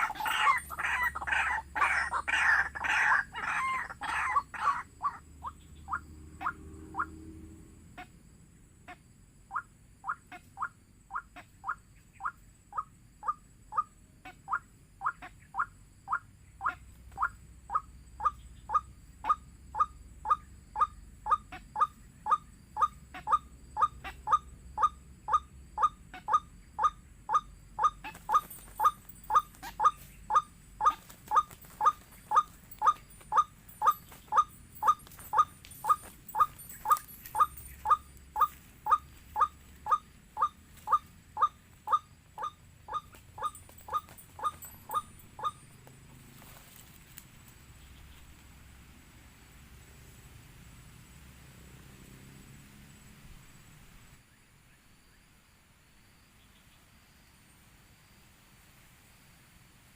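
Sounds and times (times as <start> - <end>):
bird calling sharp wak notes: 19.8 - 45.6.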